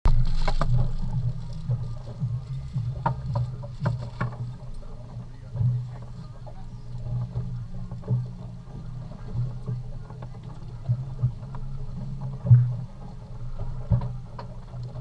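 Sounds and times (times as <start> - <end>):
boat engine droning: 0.1 - 15.0
knocks and clatter on board: 0.1 - 15.0.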